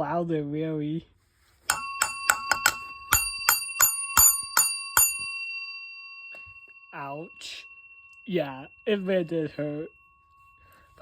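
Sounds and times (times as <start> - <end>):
alarm bell gong struck by hand: 1.7 - 6.9.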